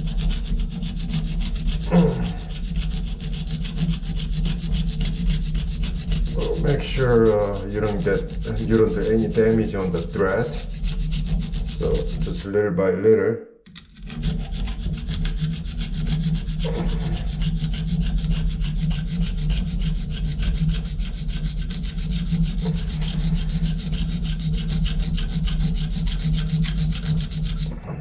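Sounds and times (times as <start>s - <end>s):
reciprocating saw cutting metal: 0.0s - 12.5s, 13.7s - 28.0s.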